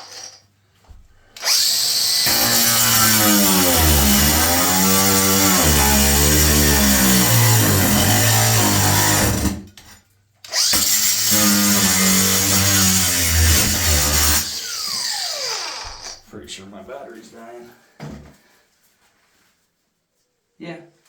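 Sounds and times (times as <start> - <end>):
cordless power tool cutting: 1.4 - 9.6, 10.5 - 16.2.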